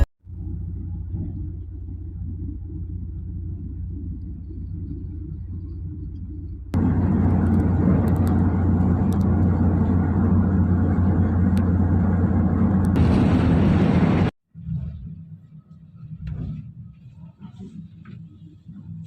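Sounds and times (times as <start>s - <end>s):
moving train rumble: 0.0s - 19.0s
sharp clicks: 7.0s - 9.5s.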